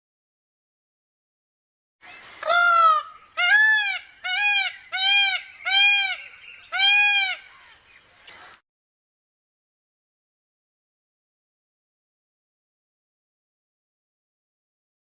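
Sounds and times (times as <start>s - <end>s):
brief click: 8.2s - 8.6s.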